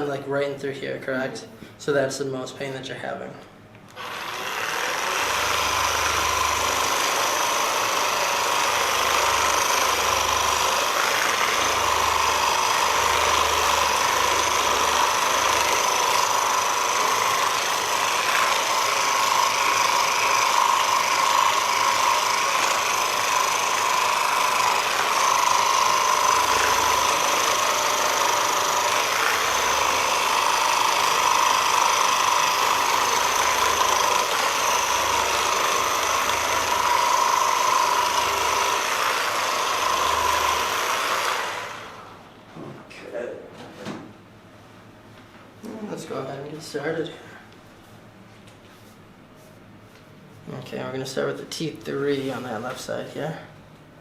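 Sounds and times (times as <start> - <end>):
massage gun high-pitched whine: 3.9 - 42.2
low throb of massage gun: 4.0 - 42.1.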